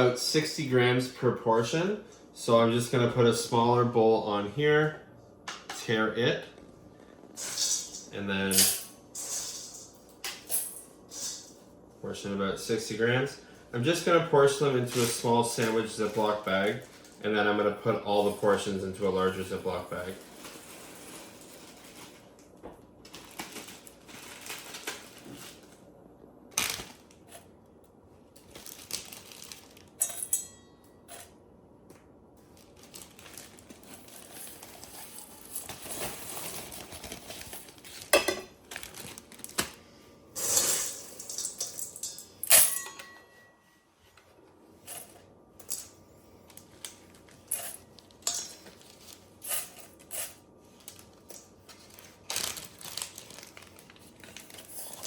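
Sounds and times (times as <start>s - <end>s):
plastic bags rustling: 14.4s - 25.9s, 26.5s - 27.5s, 28.2s - 30.0s, 32.4s - 40.2s, 46.0s - 55.0s.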